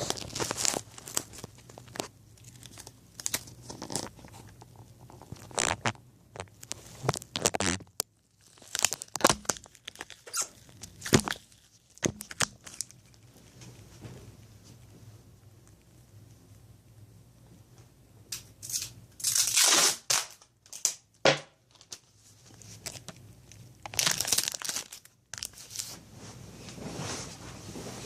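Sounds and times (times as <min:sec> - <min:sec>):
packaging crinkling and tearing: 0:00.0 - 0:13.6, 0:18.6 - 0:21.1, 0:21.7 - 0:26.0.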